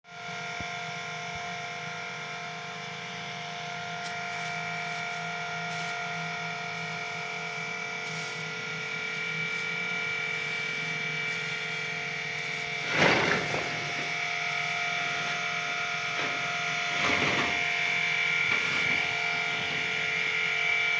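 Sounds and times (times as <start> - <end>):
machine whine: 0.1 - 20.9
rasping burst: 11.4 - 20.2.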